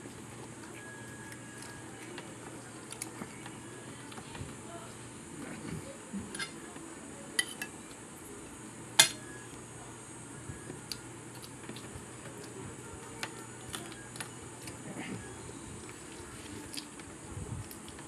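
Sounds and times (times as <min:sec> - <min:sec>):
utensils clinking against a plate: 0:06.3 - 0:06.6, 0:07.4 - 0:07.8.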